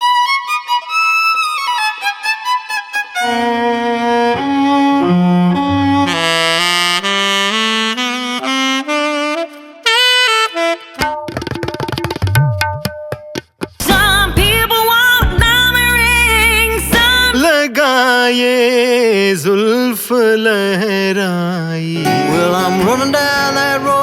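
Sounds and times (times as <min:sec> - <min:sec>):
saxophone playing: 0:02.4 - 0:11.4, 0:22.0 - 0:24.0
choppy percussive hits: 0:11.0 - 0:15.6
person singing with vibrato: 0:13.8 - 0:24.0.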